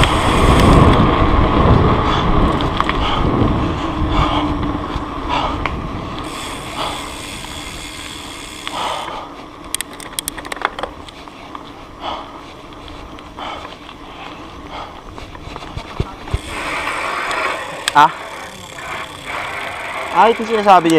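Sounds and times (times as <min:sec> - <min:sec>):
freehub ratcheting clicks: 0:00.0 - 0:01.1, 0:05.6 - 0:09.1, 0:09.7 - 0:11.1, 0:16.3 - 0:20.9
bike tyre trail noise: 0:00.0 - 0:20.9.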